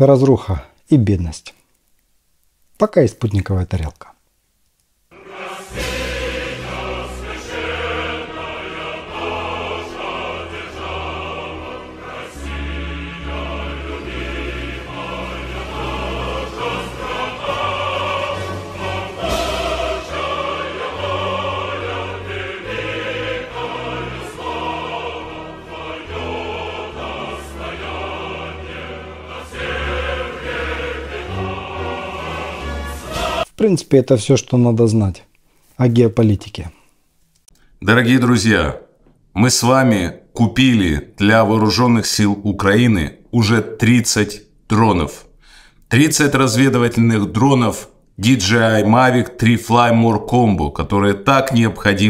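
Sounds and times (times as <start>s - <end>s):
choir singing sustained chords: 5.1s - 33.5s.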